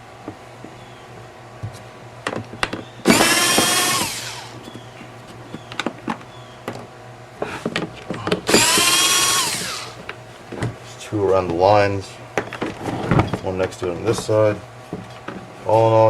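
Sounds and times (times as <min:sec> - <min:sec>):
power screwdriver whine: 0:03.0 - 0:04.6, 0:08.5 - 0:10.0.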